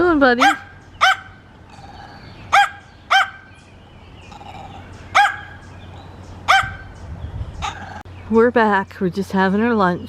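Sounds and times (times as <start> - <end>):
small dog barking: 0.4 - 1.4, 2.5 - 3.5, 5.1 - 5.6, 6.5 - 6.9.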